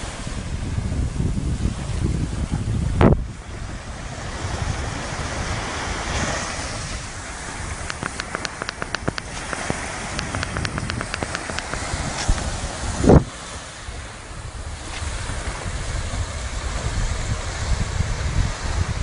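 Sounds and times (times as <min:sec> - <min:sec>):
sea surf washing: 0:00.0 - 0:19.0
wind on microphone: 0:00.0 - 0:19.0
quick sharp clicks: 0:07.8 - 0:12.5.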